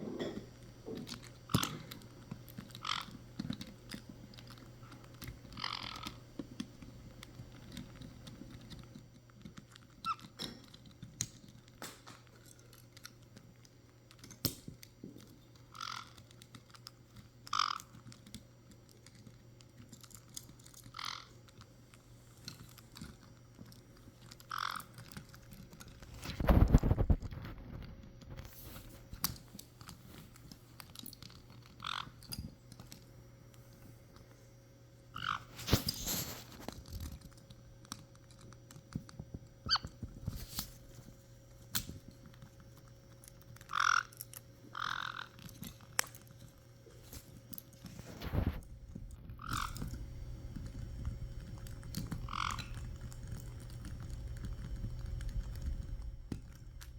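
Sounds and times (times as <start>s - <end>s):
parrots pecking and chewing: 0.0s - 56.9s
parrot squeaks: 35.2s - 35.5s, 39.7s - 39.9s, 49.4s - 49.9s.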